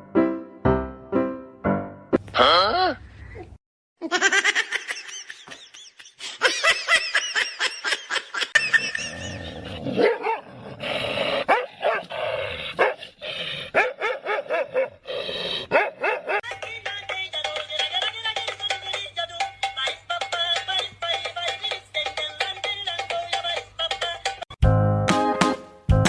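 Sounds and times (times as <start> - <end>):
dog barking and yapping: 10.0 - 10.5, 11.4 - 12.1, 12.8 - 13.0, 13.7 - 15.0, 15.7 - 16.4.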